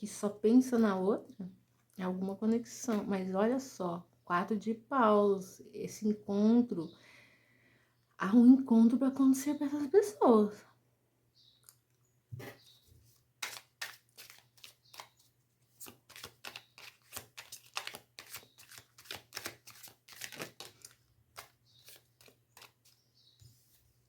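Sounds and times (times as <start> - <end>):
cards being shuffled: 13.4 - 23.0.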